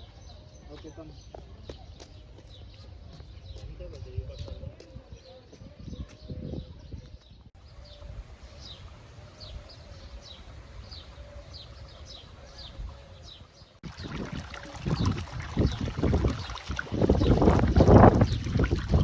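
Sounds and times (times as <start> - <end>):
wind buffeting microphone: 2.9 - 19.0
bird chirping: 6.8 - 14.1.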